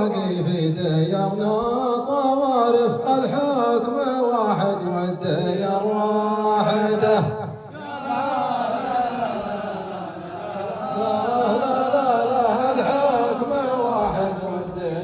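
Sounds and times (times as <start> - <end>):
person chanting a poem: 0.0 - 15.0.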